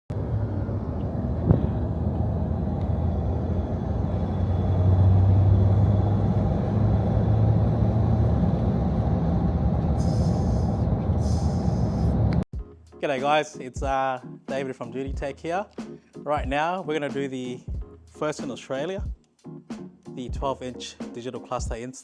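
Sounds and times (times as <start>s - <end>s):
vehicle engine running: 0.1s - 12.4s.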